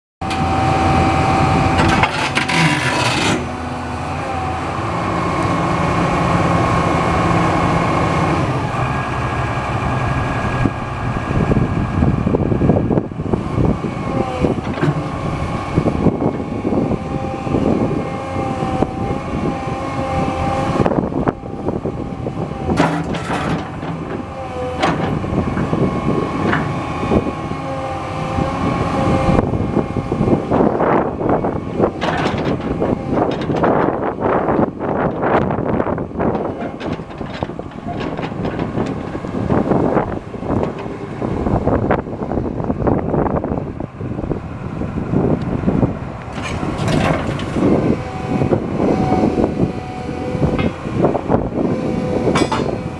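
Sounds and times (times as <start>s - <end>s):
excavator diesel engine running: 0.2s - 52.9s
whining tones: 0.2s - 52.9s
short knocks and clanks: 32.0s - 33.9s, 36.3s - 39.4s, 52.3s - 52.8s.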